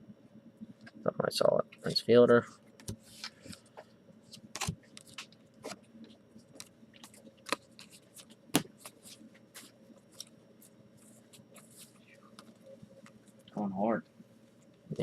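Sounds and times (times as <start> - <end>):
cards snapping: 4.3 - 5.3, 6.6 - 10.3
cards clicking and scraping: 4.3 - 5.8, 6.4 - 10.4.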